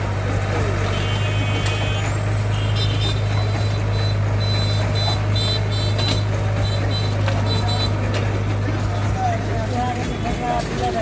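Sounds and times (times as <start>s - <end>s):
heavy diesel engine running: 0.0s - 11.0s
backup alarm beeps: 3.0s - 8.0s.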